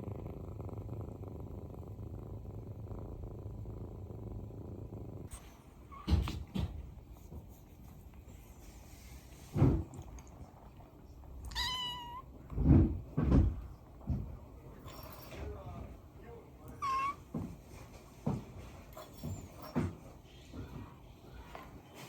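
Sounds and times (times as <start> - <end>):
kitten purring: 0.0 - 21.8
dull thumps: 5.9 - 8.4, 12.3 - 16.0.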